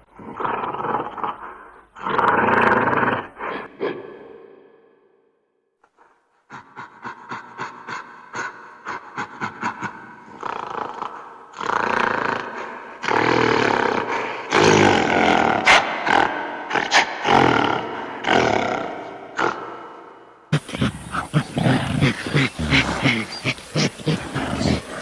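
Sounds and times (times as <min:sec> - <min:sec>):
gorilla calls: 0:20.5 - 0:25.0.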